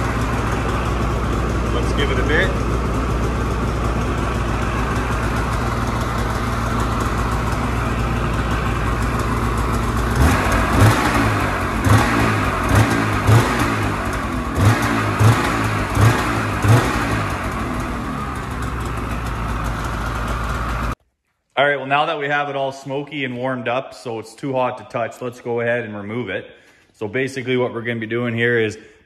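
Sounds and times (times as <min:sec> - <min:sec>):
snowmobile engine revving: 0:00.0 - 0:20.9
snowmobile engine idling: 0:00.0 - 0:21.0.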